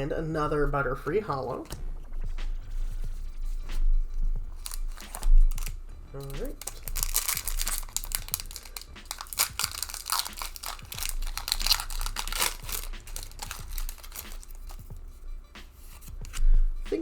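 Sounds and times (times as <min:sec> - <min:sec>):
foil wrapper crinkling and tearing: 0:04.4 - 0:15.0.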